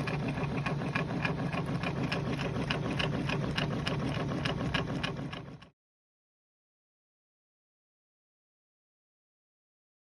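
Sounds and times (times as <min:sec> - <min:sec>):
small machine humming: 0:00.0 - 0:05.8.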